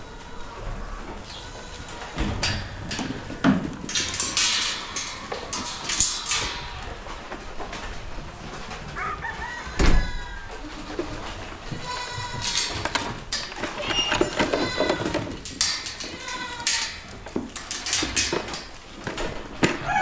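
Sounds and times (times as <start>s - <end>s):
rooster crowing: 9.0s - 10.6s, 19.8s - 20.0s
rustling: 11.0s - 19.6s
knocks: 12.4s - 18.8s.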